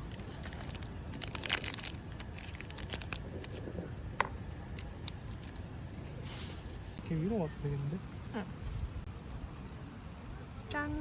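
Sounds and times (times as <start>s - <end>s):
packaging rustling and tearing: 0.0s - 3.6s.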